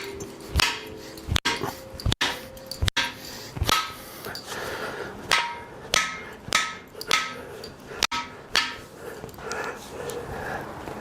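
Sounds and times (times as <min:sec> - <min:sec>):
hammer striking metal: 0:00.0 - 0:04.0, 0:05.3 - 0:07.4, 0:08.0 - 0:08.9.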